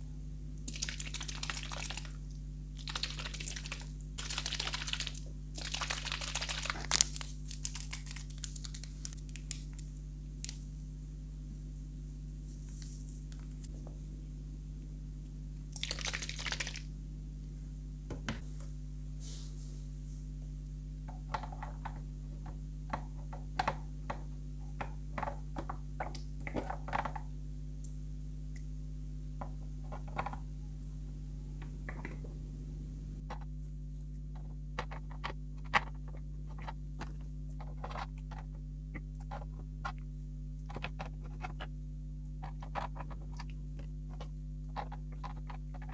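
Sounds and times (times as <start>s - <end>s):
low hum: 1.9s - 33.2s.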